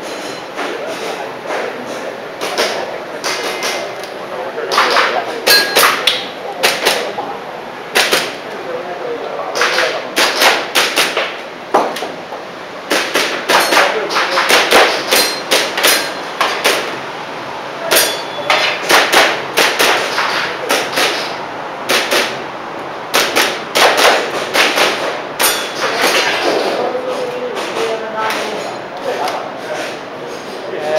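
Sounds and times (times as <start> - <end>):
pellets clanging on steel targets: 5.4 - 6.1, 14.9 - 16.3, 17.9 - 18.8, 25.4 - 26.5
airsoft pistol shots: 7.9 - 8.4, 9.6 - 11.4, 17.9 - 21.3, 21.9 - 22.4, 23.1 - 25.6.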